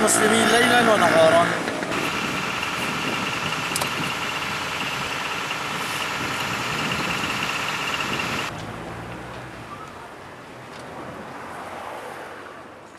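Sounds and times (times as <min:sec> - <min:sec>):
engine idling: 0:01.9 - 0:08.5
steady high whine: 0:01.9 - 0:08.5.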